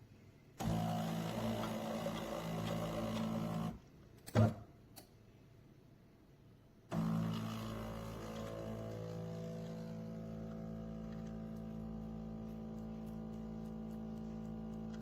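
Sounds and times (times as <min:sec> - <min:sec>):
espresso machine grinding and brewing: 0:00.6 - 0:03.8, 0:06.9 - 0:15.0.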